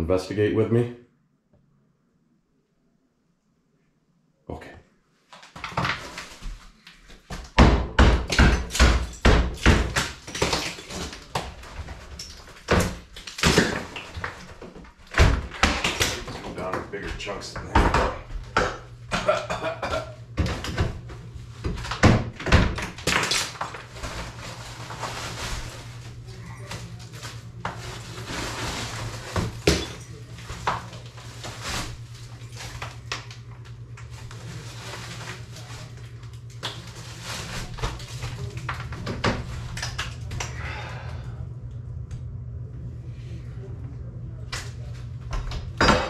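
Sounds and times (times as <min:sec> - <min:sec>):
ceiling material falling: 0:05.4 - 0:18.3, 0:19.1 - 0:40.9
steady low hum: 0:08.7 - 0:46.0.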